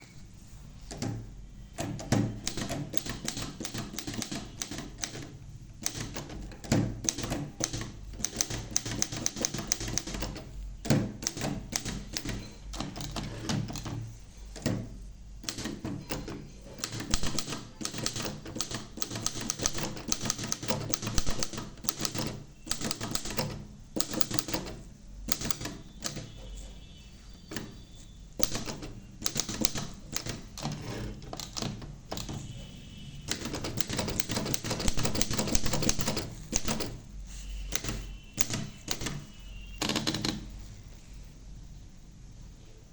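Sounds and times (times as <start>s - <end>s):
typewriter keystroke clacks: 0.8s - 26.6s, 27.4s - 40.6s.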